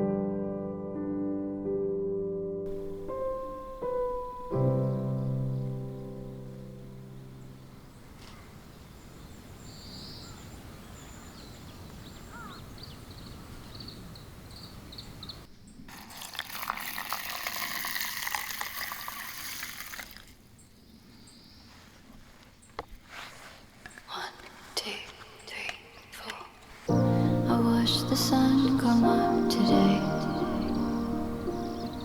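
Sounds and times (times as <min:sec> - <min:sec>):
liquid being poured: 0:15.9 - 0:20.4.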